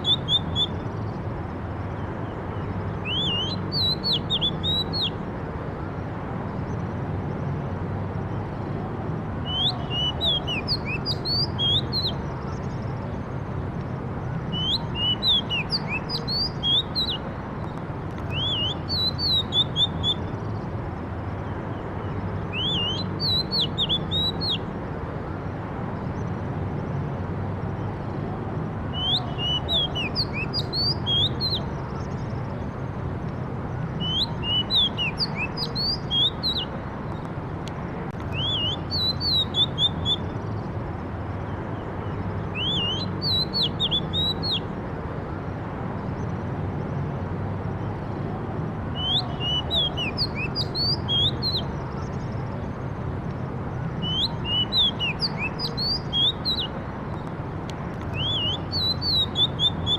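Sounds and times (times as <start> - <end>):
bird whistling song: 0.0 - 1.2, 1.9 - 5.2, 9.4 - 12.8, 14.5 - 20.3, 22.0 - 24.6, 28.9 - 32.3, 34.0 - 36.8, 38.3 - 40.4, 42.1 - 44.7, 48.9 - 52.2, 54.0 - 56.8, 58.1 - 59.9.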